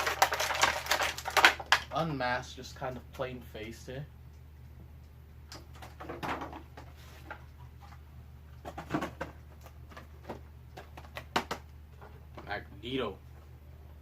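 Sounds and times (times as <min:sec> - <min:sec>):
plastic packaging rustling: 0:00.0 - 0:02.0
steady low hum: 0:00.1 - 0:14.0.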